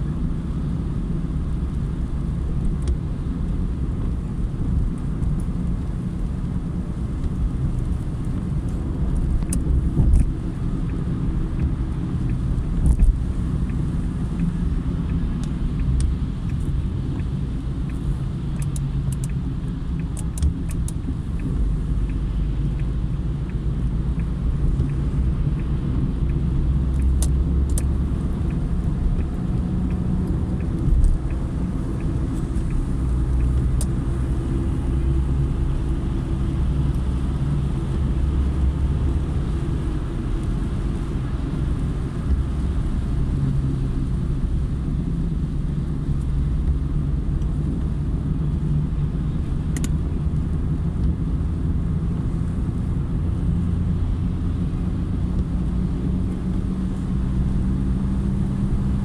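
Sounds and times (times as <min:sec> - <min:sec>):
car engine and tyres rumbling: 0:00.0 - 0:59.0
faint sharp ticks: 0:11.6 - 0:34.4.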